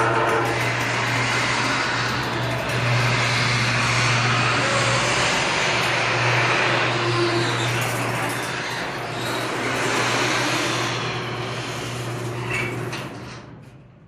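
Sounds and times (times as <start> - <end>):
garage door opener motor humming: 0.0 - 14.0.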